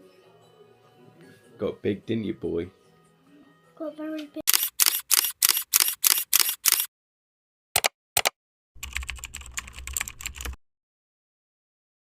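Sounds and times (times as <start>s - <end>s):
sharp clicks: 4.5s - 6.9s, 7.8s - 8.4s.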